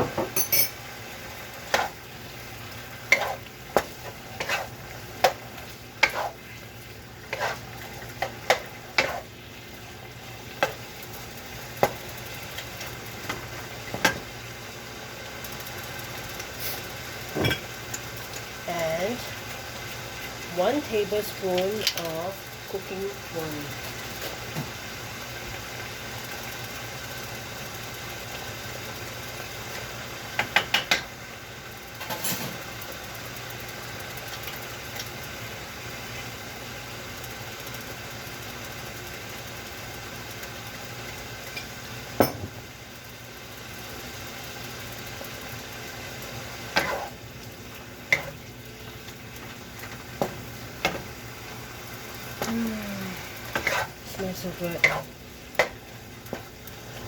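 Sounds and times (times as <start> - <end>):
food sizzling in a pan: 0.0 - 57.0
spatula scraping a pan: 1.7 - 2.0, 3.0 - 5.4, 6.0 - 6.6, 7.2 - 9.3, 46.7 - 47.2, 53.4 - 54.0, 54.8 - 55.7.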